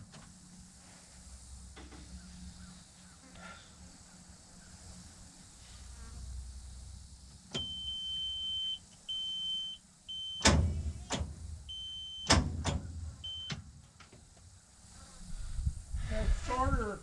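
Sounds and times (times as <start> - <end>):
steady high-pitched beep: 7.6 - 10.4, 11.7 - 12.3, 13.2 - 13.5.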